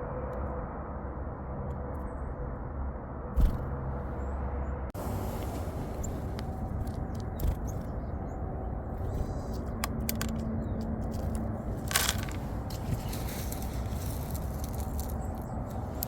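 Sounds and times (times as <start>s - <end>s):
low wind rumble on microphone: 0.0s - 16.0s
small birds chirping: 5.0s - 16.0s.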